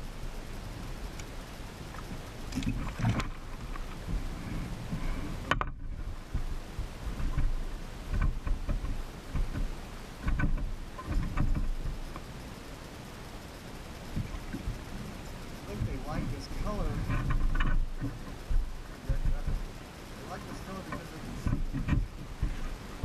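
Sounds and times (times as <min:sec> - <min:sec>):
water noise: 0:00.0 - 0:23.0
wind rumbling on microphone: 0:00.0 - 0:23.0
clicks and knocks against boat: 0:01.9 - 0:12.4, 0:15.7 - 0:23.0.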